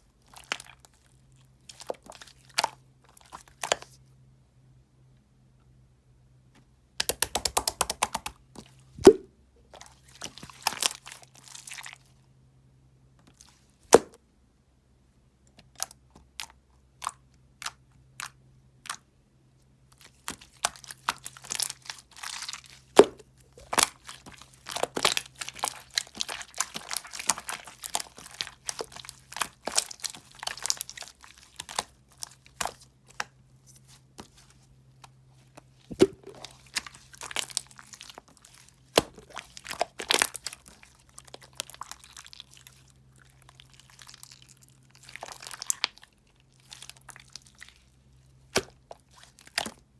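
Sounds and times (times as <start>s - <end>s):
gel crackling and popping: 7.0s - 8.4s, 20.2s - 33.3s, 35.5s - 49.9s.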